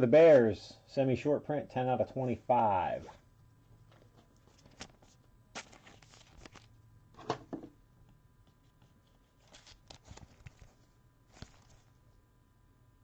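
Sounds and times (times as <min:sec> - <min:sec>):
faint rustling of cards: 0:02.2 - 0:06.8, 0:08.0 - 0:12.3.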